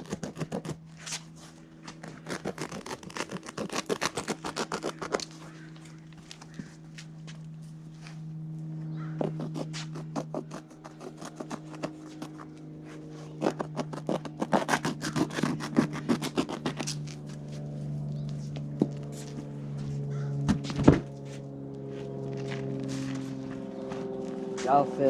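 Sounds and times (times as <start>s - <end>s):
carpet being cut: 0.0s - 5.6s, 9.0s - 17.6s
steady low hum: 0.0s - 25.0s.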